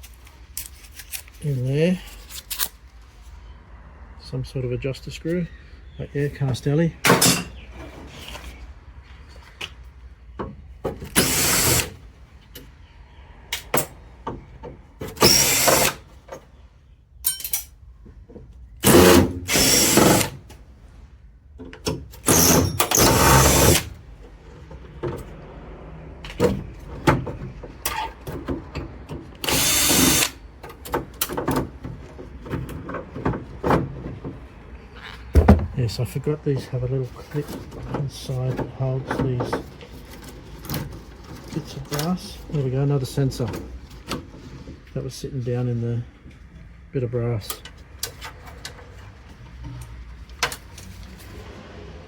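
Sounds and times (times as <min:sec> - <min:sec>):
power drill running: 0:11.1 - 0:12.0, 0:15.2 - 0:16.0, 0:18.8 - 0:20.4, 0:22.2 - 0:23.9, 0:29.4 - 0:30.4
metal parts clicking: 0:17.2 - 0:17.8.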